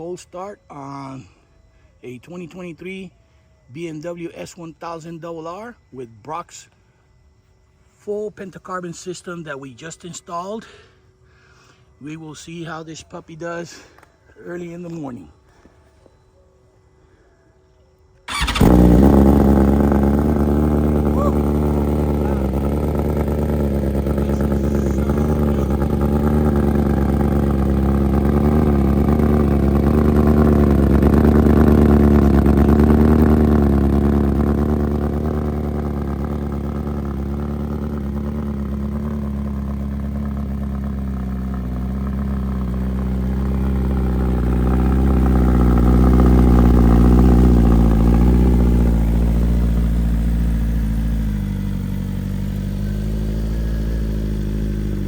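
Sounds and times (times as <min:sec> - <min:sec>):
motorcycle engine idling: 0:18.2 - 0:55.0.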